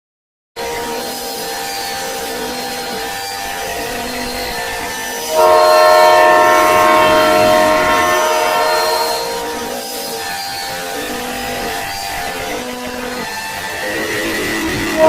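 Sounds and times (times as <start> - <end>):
multi-note alarm drone: 0.6 - 15.0
blaring alarm horn chord: 2.2 - 14.2.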